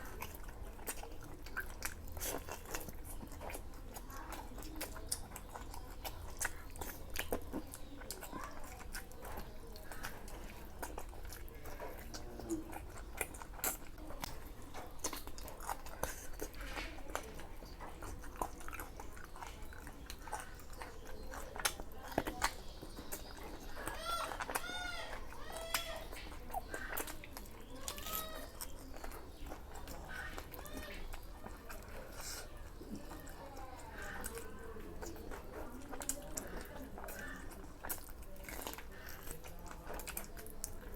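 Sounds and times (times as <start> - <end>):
person chewing and lip-smacking: 0.0 - 40.9.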